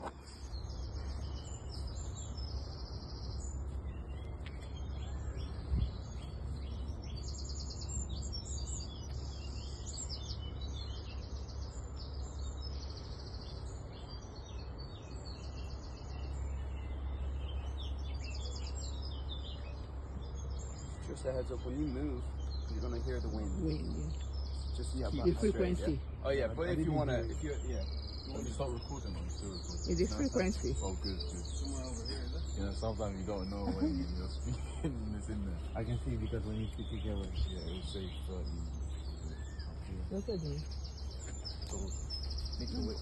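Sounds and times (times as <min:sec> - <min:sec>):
wind rumble on microphone: 0:00.0 - 0:18.4
birds chirping and trilling: 0:00.0 - 0:43.0.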